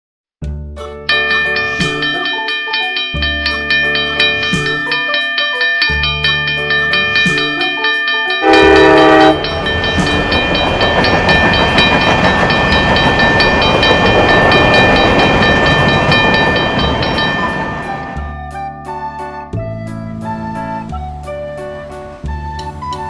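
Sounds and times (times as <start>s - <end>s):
train running on rails: 1.1s - 18.5s
train horn blast: 8.4s - 9.8s.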